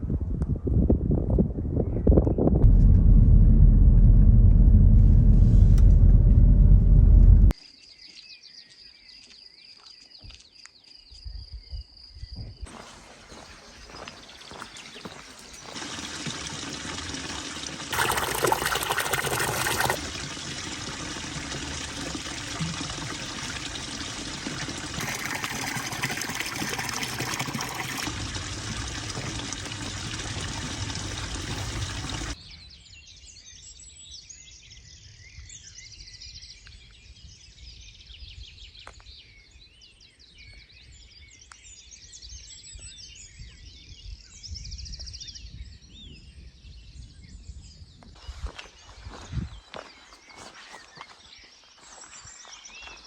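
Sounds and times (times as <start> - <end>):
outdoor ambience: 2.3 - 32.8, 48.2 - 53.0
water trickling and splashing: 12.7 - 32.4.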